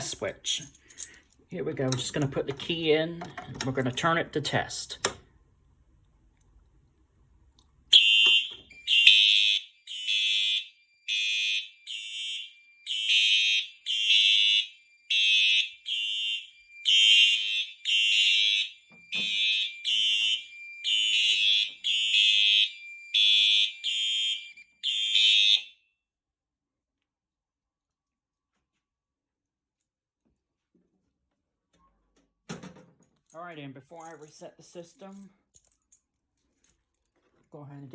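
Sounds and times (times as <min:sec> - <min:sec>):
fire alarm horns pulsing: 0:07.9 - 0:25.8.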